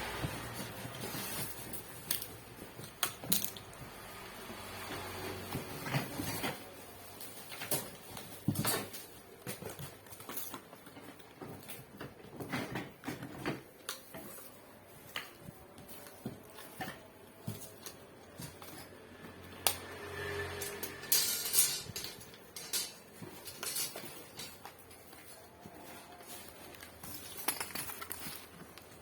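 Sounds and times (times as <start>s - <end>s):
packaging rustling: 23.3s - 29.0s.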